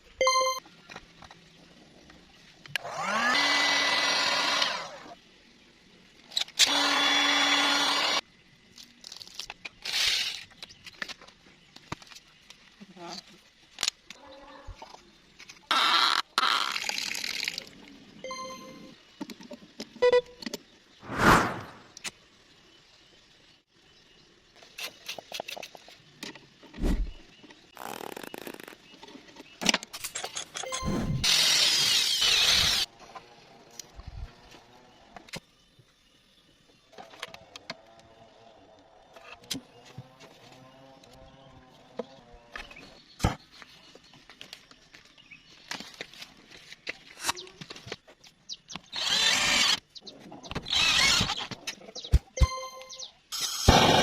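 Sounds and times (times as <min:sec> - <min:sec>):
brief high tone: 0:00.2 - 0:00.6.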